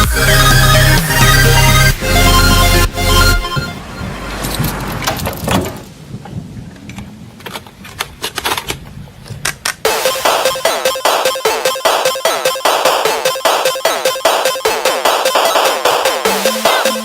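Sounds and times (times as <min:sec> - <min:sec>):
wind and tyre noise: 0:02.4 - 0:09.9.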